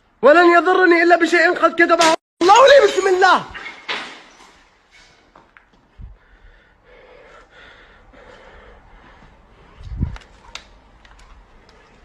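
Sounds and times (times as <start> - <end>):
person breathing: 6.0 - 9.8.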